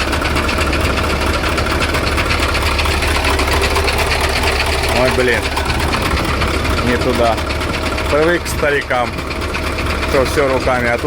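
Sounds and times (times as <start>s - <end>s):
diesel truck engine idling: 0.0s - 11.0s.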